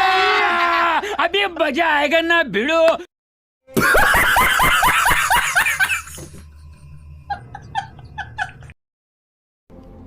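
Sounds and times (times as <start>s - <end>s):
rapid high cackling laughter: 3.8s - 6.3s.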